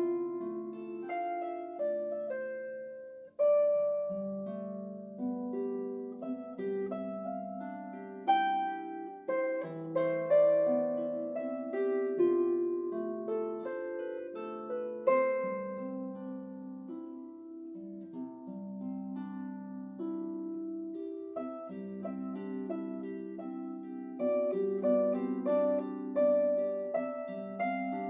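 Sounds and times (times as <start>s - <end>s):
harp melody: 0.0s - 28.0s.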